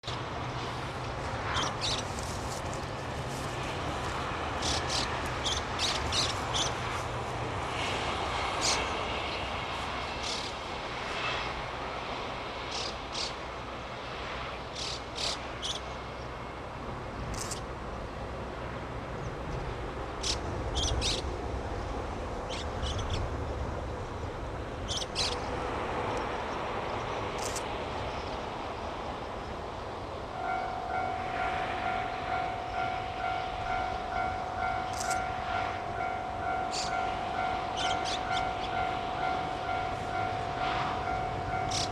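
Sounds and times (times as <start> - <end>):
low railway hum: 0.0 - 41.9
small birds chirping: 4.6 - 6.8.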